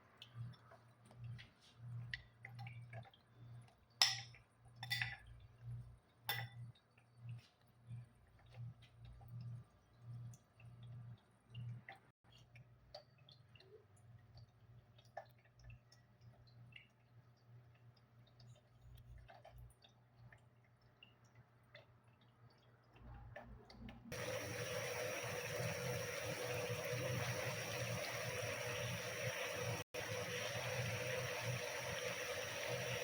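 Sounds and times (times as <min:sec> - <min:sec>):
kitchenware clinking: 0:04.0 - 0:05.3, 0:06.3 - 0:06.6.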